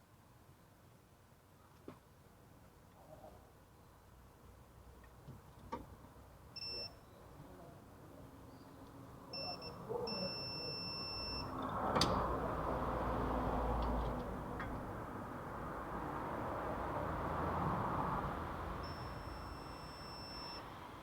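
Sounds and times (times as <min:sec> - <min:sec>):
electronic beeping: 0:06.6 - 0:07.0, 0:09.4 - 0:11.5, 0:18.8 - 0:20.7.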